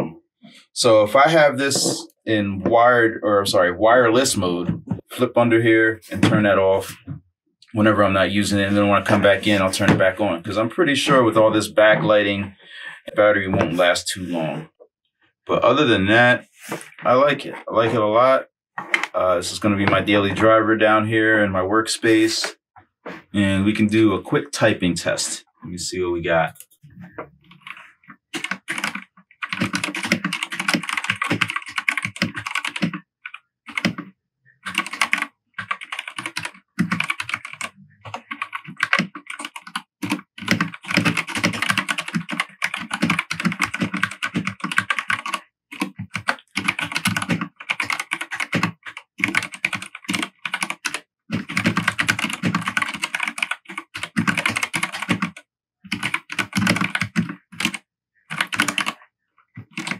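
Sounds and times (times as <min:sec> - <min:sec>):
fast typing on mechanical keyboard: 0:28.4 - 0:33.0, 0:33.7 - 0:34.0, 0:34.6 - 0:59.0, 0:59.6 - 0:59.9.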